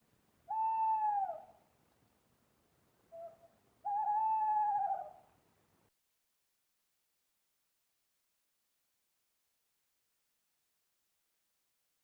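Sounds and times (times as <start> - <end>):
owl hooting: 0.5 - 1.6, 3.1 - 5.3.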